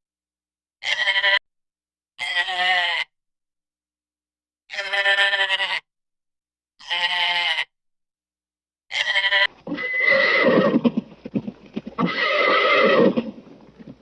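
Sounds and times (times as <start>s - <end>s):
goat bleating: 0.8s - 1.4s, 2.2s - 3.1s, 4.7s - 5.9s, 6.8s - 7.7s, 8.9s - 10.8s, 12.0s - 13.3s
horse neighing: 9.0s - 14.0s.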